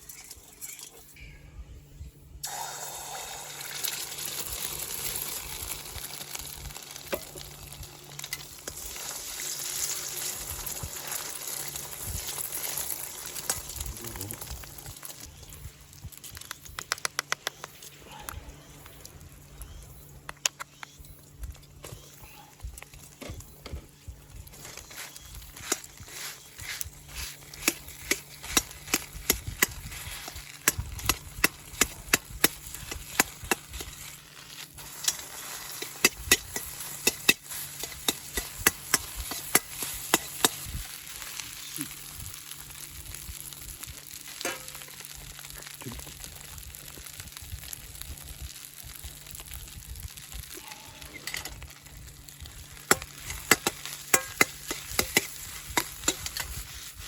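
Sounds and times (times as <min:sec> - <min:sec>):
food sizzling in a wok: 0:02.4 - 0:15.7, 0:24.6 - 0:57.0
sharp clicks and taps: 0:16.3 - 0:18.4, 0:20.2 - 0:21.1.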